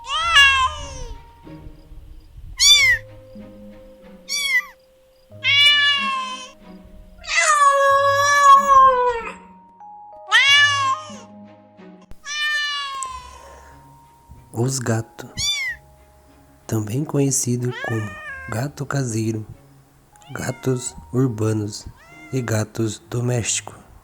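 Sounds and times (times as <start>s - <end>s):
cat meowing: 0.0s - 1.2s, 2.6s - 3.0s, 4.3s - 4.8s, 5.4s - 6.6s, 7.2s - 9.4s, 10.3s - 11.3s, 12.2s - 13.6s, 15.4s - 15.8s, 17.6s - 18.7s, 20.1s - 21.2s, 21.8s - 22.7s
soft background music: 0.0s - 24.0s.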